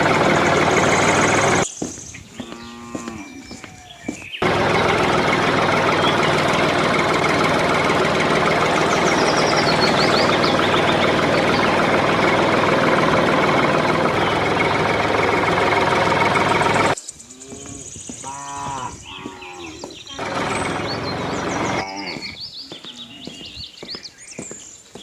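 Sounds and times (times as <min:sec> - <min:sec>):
engine running: 0:00.0 - 0:17.0, 0:19.7 - 0:23.4
cow mooing: 0:02.4 - 0:03.5, 0:17.3 - 0:22.4.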